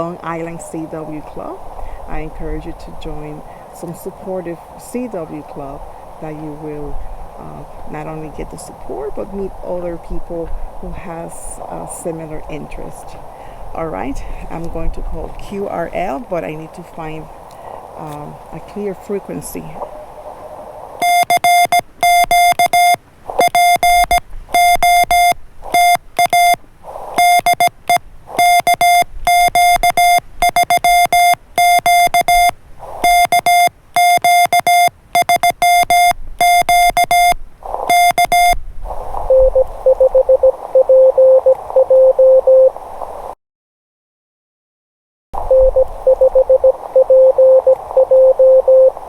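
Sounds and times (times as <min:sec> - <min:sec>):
radio band hiss: 0:00.0 - 0:40.8, 0:42.6 - 0:43.4, 0:45.4 - 0:49.0
lower-pitched morse signal: 0:21.0 - 0:26.6, 0:27.2 - 0:38.6, 0:39.2 - 0:42.8, 0:45.4 - 0:49.0
morse code tone: 0:21.0 - 0:26.6, 0:27.2 - 0:38.6, 0:39.3 - 0:42.8, 0:45.4 - 0:49.0.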